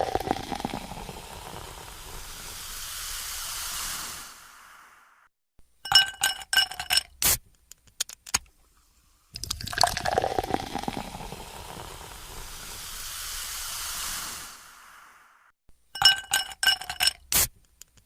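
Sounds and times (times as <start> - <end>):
soda can fizzing: 0.0 - 4.5, 9.3 - 14.9
metallic clicks and clinks: 5.9 - 7.2, 16.0 - 17.3.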